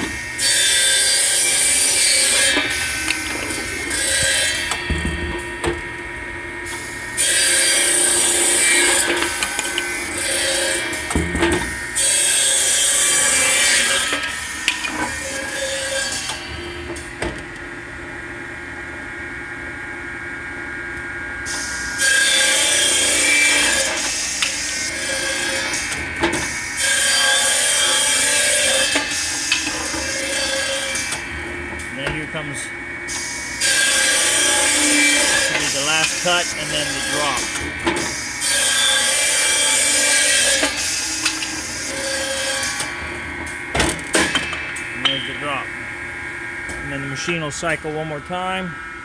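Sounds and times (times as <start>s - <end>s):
saw blade cutting wood: 0.0s - 4.9s, 6.7s - 16.7s, 21.5s - 31.4s, 32.0s - 43.1s, 43.7s - 45.6s
saw machine running: 0.0s - 17.9s, 21.5s - 49.0s.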